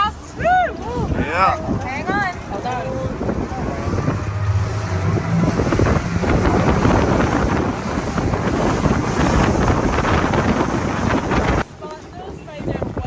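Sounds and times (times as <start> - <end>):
faint boat motor: 0.0 - 13.0
wind buffeting microphone: 0.0 - 13.0.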